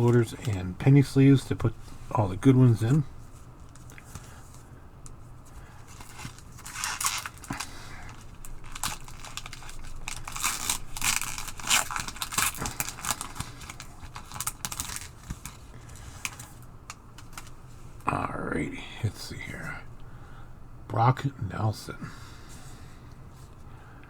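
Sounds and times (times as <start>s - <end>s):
card pack wrapper tearing: 5.8s - 16.6s.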